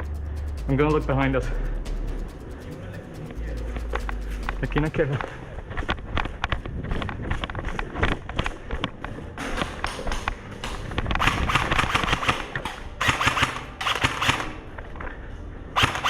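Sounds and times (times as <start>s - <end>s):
airsoft rifles firing bursts: 11.2s - 14.8s, 15.8s - 16.0s.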